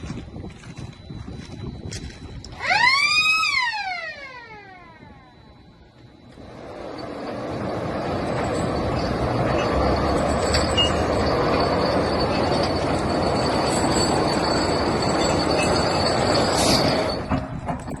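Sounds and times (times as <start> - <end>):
heavy machine metallic grinding: 6.4 - 18.0
thin high squeal: 6.8 - 17.3.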